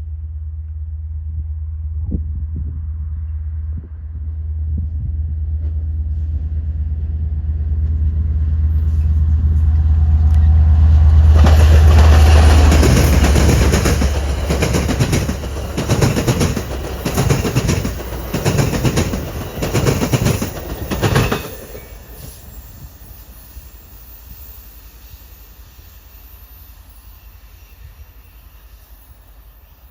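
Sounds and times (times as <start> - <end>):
diesel train engine drone: 0.0 - 29.9
train wheels clickety-clack: 7.6 - 23.1.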